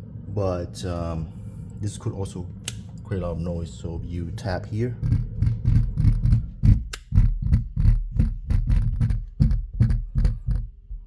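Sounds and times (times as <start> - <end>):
hand tapping on plastic: 5.0 - 10.8.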